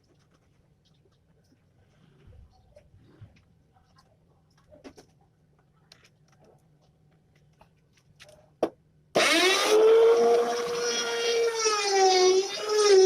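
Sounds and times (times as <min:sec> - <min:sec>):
router motor whining: 0:09.2 - 0:13.0.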